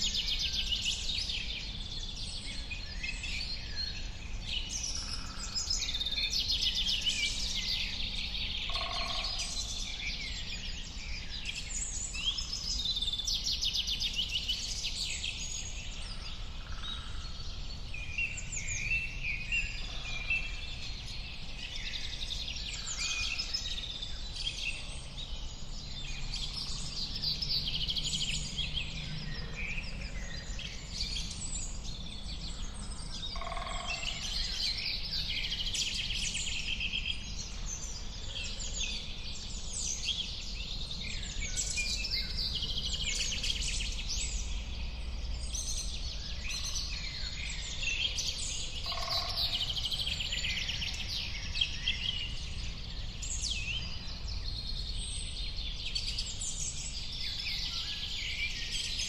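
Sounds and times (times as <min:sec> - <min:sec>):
birds chirping and singing: 0:00.0 - 0:59.0.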